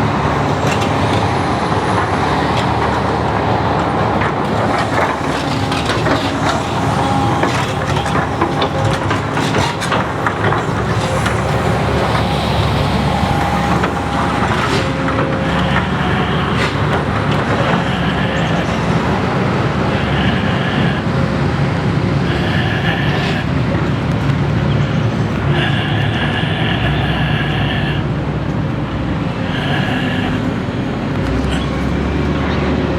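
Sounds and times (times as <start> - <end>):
metal clanks and knocks: 0.0 - 12.5
diesel engine running: 0.0 - 32.9.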